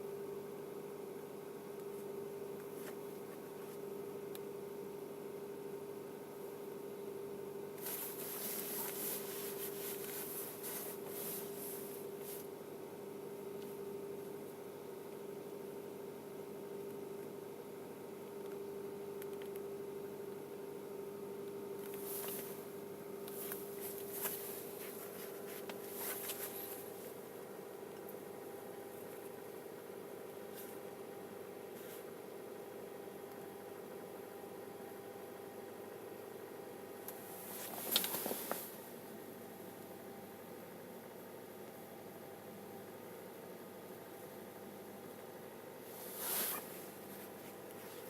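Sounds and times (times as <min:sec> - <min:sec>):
scratchy rustling near microphone: 0:07.8 - 0:12.5, 0:22.0 - 0:22.7, 0:23.3 - 0:27.2, 0:37.3 - 0:38.9, 0:45.9 - 0:48.0.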